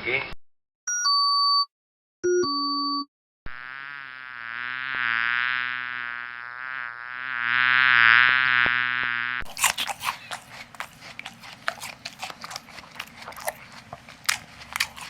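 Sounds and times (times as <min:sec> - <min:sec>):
insect-like buzz: 0:03.5 - 0:10.4.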